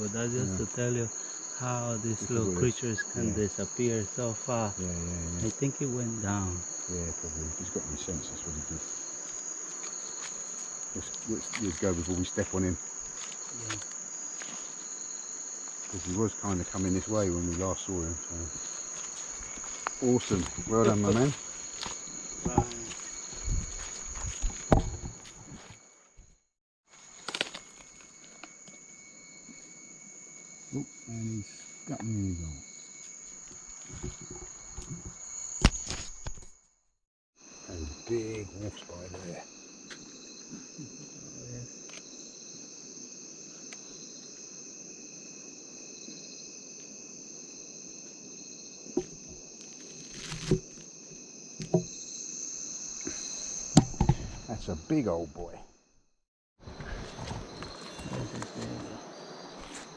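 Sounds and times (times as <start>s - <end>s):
night insects chorus: 0.0s - 36.5s, 37.4s - 55.9s, 56.6s - 59.9s
crickets trilling: 0.0s - 36.6s, 37.4s - 56.0s, 56.6s - 59.9s
footsteps scuffing: 9.2s - 12.2s, 13.0s - 14.9s, 18.5s - 25.8s
sharp knocks: 51.6s - 51.9s.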